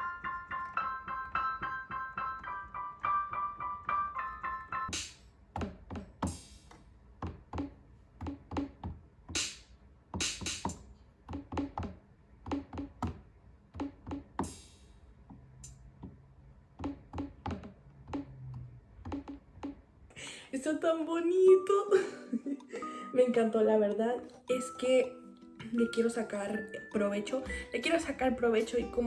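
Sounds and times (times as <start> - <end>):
electronic drum hits: 10.2 - 13.2, 13.8 - 14.8, 16.8 - 18.5, 19.1 - 19.8.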